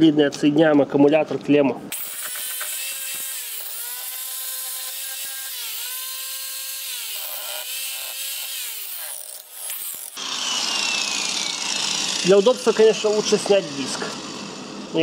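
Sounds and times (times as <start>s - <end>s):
power tool motor whining: 1.9s - 15.0s.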